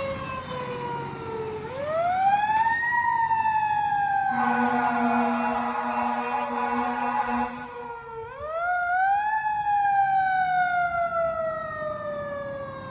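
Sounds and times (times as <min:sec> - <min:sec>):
fire truck siren wailing: 0:00.0 - 0:12.9
fire truck horn blast: 0:04.3 - 0:07.8.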